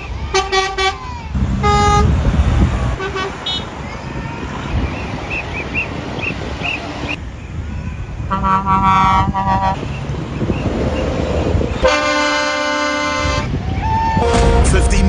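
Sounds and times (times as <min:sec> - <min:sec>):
vehicle horn honk: 0:01.6 - 0:02.1, 0:03.0 - 0:03.7, 0:08.3 - 0:09.8, 0:11.8 - 0:13.5, 0:14.2 - 0:15.0.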